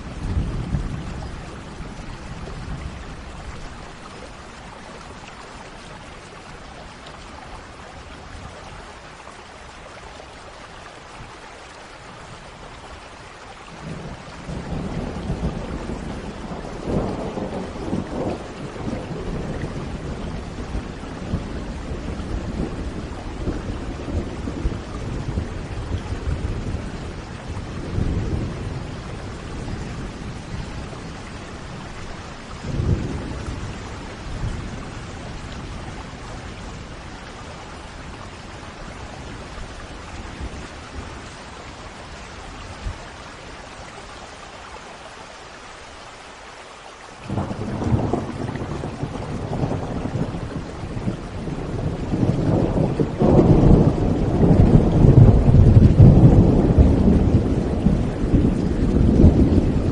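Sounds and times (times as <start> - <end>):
rain hiss: 0.0 - 59.9
thunder rumbling: 13.8 - 43.0, 47.3 - 59.9.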